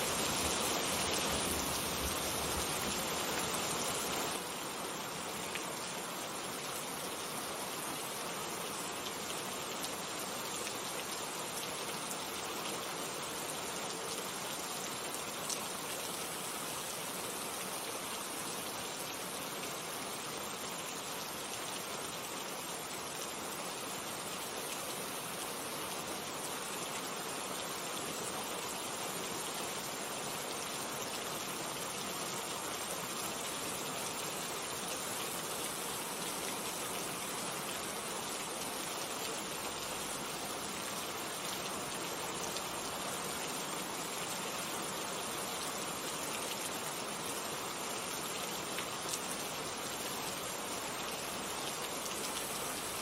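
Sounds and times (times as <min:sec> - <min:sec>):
steady rainfall: 0:00.0 - 0:53.0.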